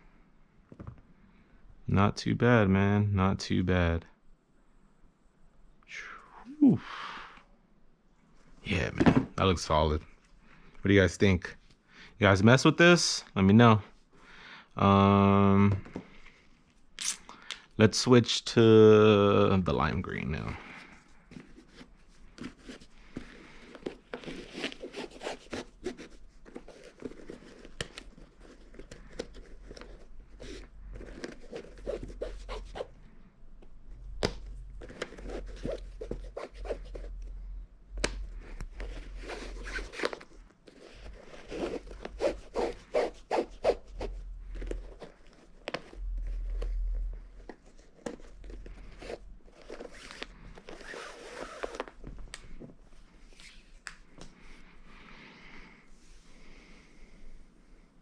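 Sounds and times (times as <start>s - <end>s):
lace zipping through eyelets: 30.4s - 32.9s, 41.0s - 44.2s, 48.9s - 52.0s.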